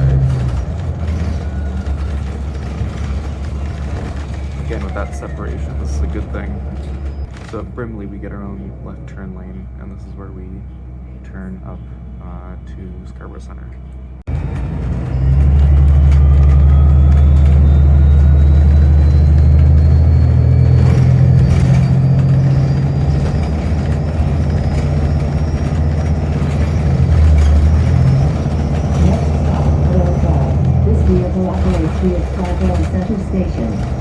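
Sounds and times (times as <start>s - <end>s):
bus engine droning: 0.0s - 34.0s.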